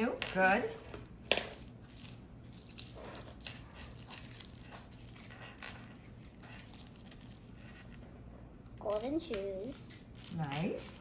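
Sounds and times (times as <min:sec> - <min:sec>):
plastic packaging crinkling: 0:01.5 - 0:07.8.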